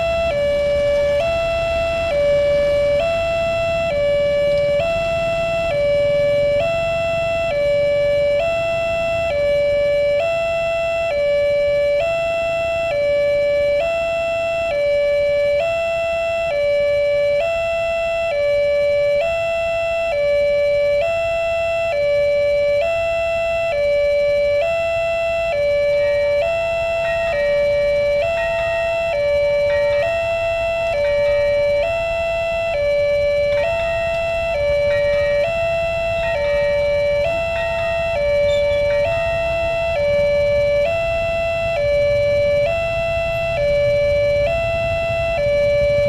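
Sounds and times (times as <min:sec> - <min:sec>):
level crossing warning siren: 0:00.0 - 0:46.0.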